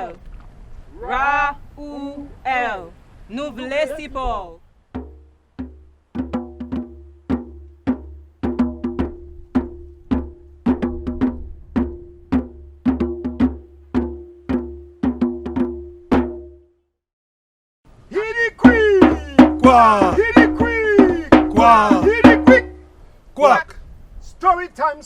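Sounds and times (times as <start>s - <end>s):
hollow pitched percussion strikes: 5.0s - 16.7s, 18.7s - 23.0s.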